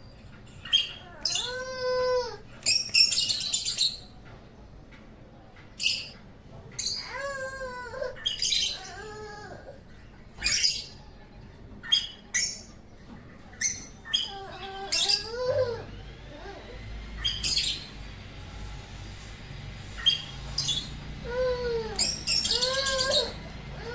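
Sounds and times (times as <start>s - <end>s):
birds chirping: 0.0s - 23.9s
bird whistled calls: 17.1s - 18.0s, 20.0s - 21.0s.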